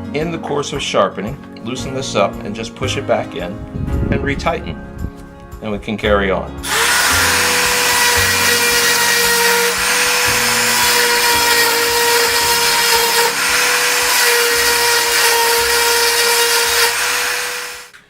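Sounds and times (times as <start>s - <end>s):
rotary tool grinding metal: 6.6s - 17.9s.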